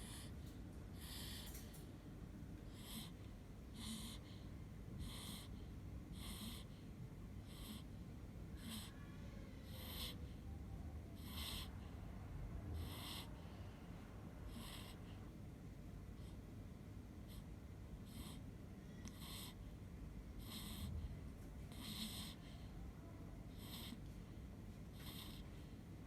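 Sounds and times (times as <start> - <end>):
baby snoring: 2.7 - 3.2, 3.8 - 4.3, 5.0 - 5.5, 6.1 - 6.7, 7.5 - 7.9, 8.6 - 10.2, 11.2 - 11.8, 12.8 - 13.3, 14.5 - 15.0, 18.1 - 18.4, 19.0 - 19.6, 20.4 - 20.9, 21.7 - 22.5, 23.5 - 24.0, 25.0 - 25.5.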